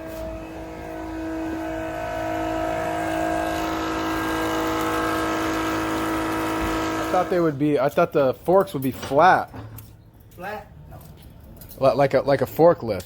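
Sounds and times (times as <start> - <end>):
motor whining: 0.0 - 7.5.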